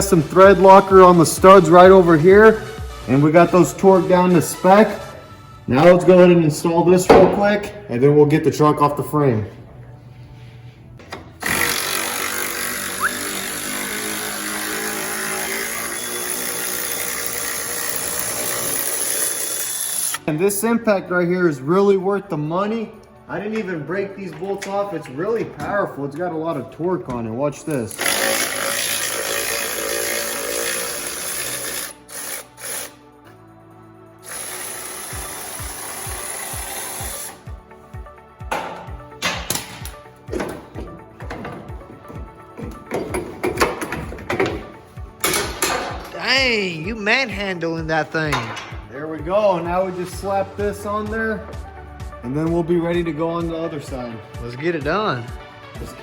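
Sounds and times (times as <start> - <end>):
impact wrench running: 11.4 - 20.2, 27.8 - 33.0, 34.2 - 37.4
impact wrench spinning bolts: 27.9 - 33.0
music with thumping beat: 38.0 - 48.9.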